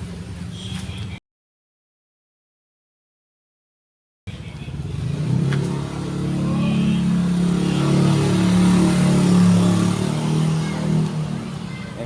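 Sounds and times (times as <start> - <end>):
low engine-like hum: 4.3 - 12.0.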